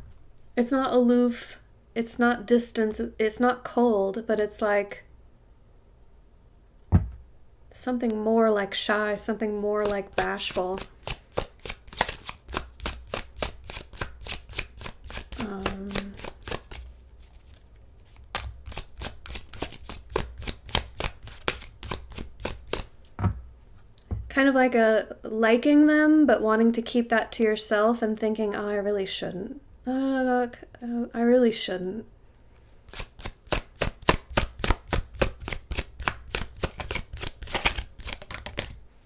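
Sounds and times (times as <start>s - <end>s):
cards being shuffled: 9.8s - 23.0s, 32.9s - 38.8s.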